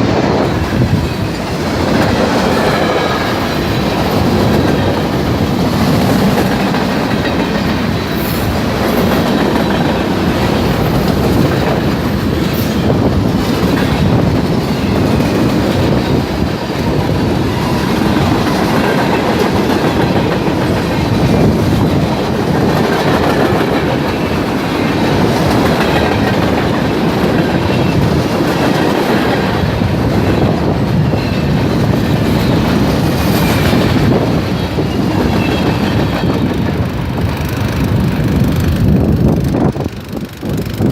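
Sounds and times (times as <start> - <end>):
train wheels clattering over rail joints: 0.0 - 40.9.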